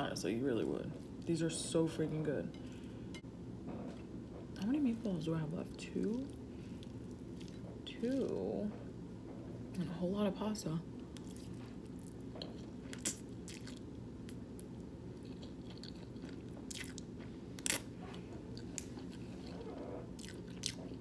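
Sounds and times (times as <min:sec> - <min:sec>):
low steady hum: 0:00.0 - 0:21.0
close-up chewing: 0:06.1 - 0:08.3, 0:11.1 - 0:21.0.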